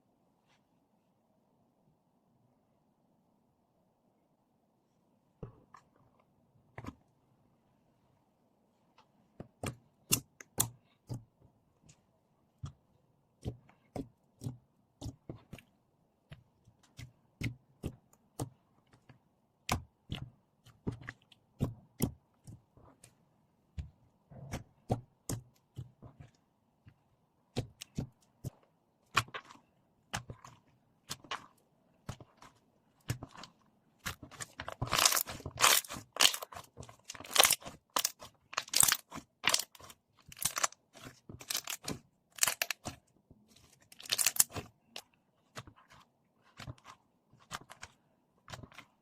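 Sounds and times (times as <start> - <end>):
slime clicking and popping: 34.3 - 40.7, 41.4 - 42.9.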